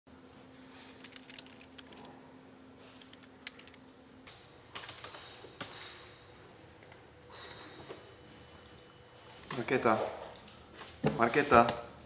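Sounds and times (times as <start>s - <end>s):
faint steady hum: 0.1s - 12.0s.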